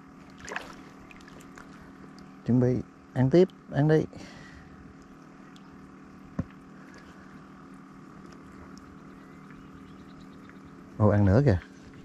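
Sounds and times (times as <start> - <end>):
faint machine hum: 0.0 - 12.0.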